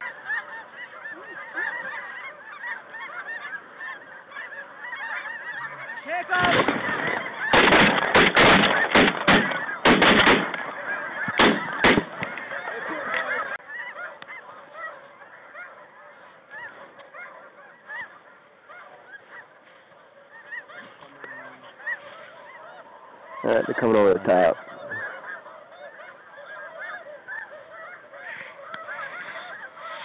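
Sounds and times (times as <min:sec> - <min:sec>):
geese calling: 0:00.0 - 0:30.0
shotgun shots: 0:06.4 - 0:10.7, 0:11.3 - 0:12.3.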